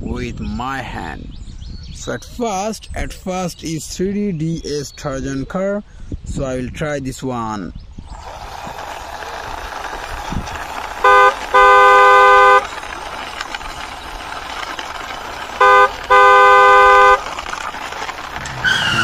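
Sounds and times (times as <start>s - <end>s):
toy truck rolling: 8.1s - 19.0s
vehicle horn honking: 11.0s - 12.6s, 15.6s - 17.2s.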